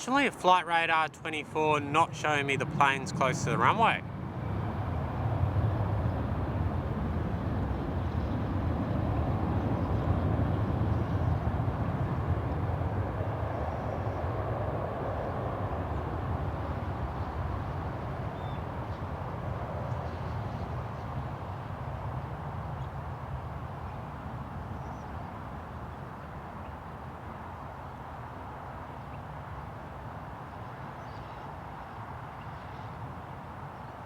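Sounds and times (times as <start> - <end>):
jet engines rumbling: 0.0 - 13.5.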